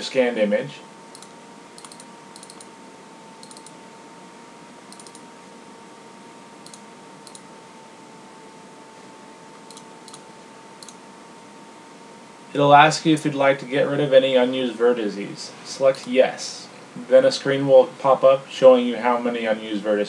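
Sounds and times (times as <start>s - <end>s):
faint steady hum: 0.0s - 20.0s
computer mouse clicks: 1.1s - 2.7s, 3.4s - 3.8s, 4.9s - 5.3s, 6.6s - 7.5s, 9.7s - 10.2s, 10.8s - 11.0s.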